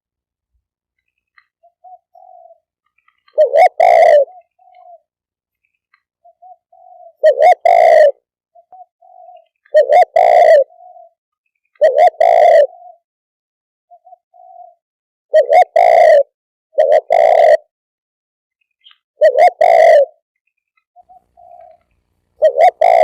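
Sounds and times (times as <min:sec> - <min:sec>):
dove cooing: 0:01.4 - 0:05.2, 0:06.2 - 0:11.2, 0:11.8 - 0:13.0, 0:13.9 - 0:17.7, 0:19.2 - 0:20.2, 0:21.0 - 0:23.0.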